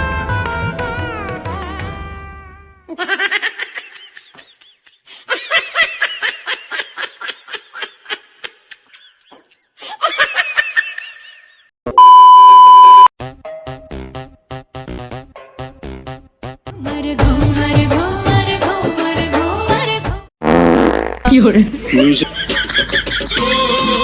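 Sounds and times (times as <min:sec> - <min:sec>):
loud steady beep: 0:12.0 - 0:13.1.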